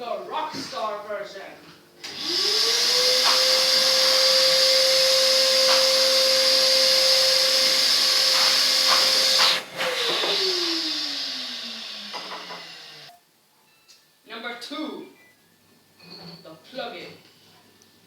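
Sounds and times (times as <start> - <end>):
vacuum cleaner motor whine: 2.0 - 13.1.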